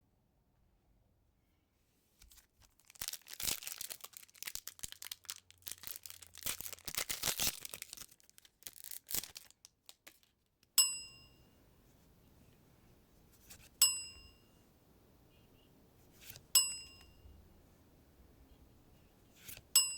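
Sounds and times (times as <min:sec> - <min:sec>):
foil wrapper tearing and crinkling: 0:02.3 - 0:10.4
bright ringing dings: 0:10.8 - 0:11.7, 0:13.8 - 0:14.7, 0:16.5 - 0:17.5.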